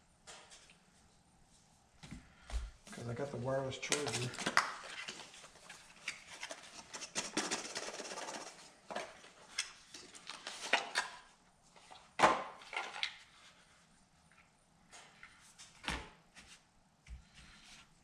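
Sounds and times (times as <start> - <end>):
packaging rustling and rubbing: 3.9 - 11.2.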